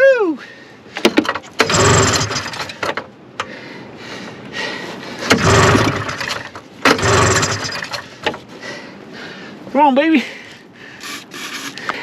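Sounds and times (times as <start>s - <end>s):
recoil starter pulls: 1.2s - 3.0s, 5.3s - 8.1s, 11.0s - 12.0s
engine cranking: 1.4s - 2.9s, 5.3s - 8.1s, 11.0s - 12.0s.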